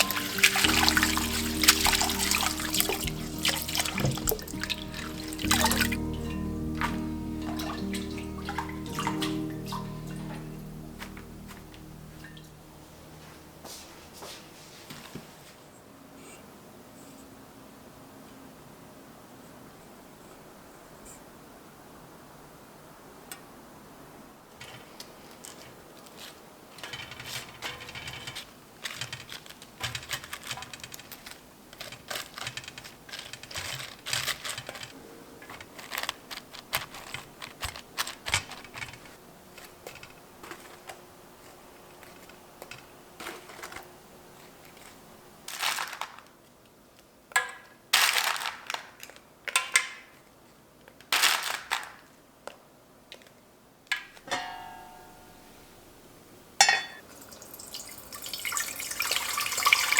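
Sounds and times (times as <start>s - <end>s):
kitchenware clicks and taps: 0.0s - 12.4s, 53.9s - 55.3s, 56.6s - 59.9s
steamer lid clinking: 54.3s - 55.4s.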